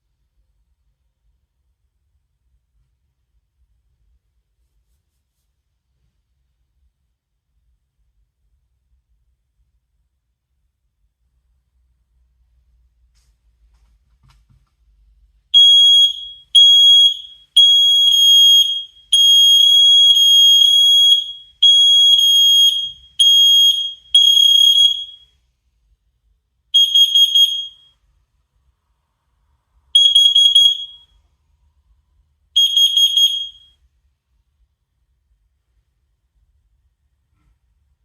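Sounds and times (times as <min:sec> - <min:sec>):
smoke detector alarm beeps: 0:15.6 - 0:25.3, 0:26.8 - 0:28.0, 0:30.0 - 0:31.2, 0:32.6 - 0:33.8.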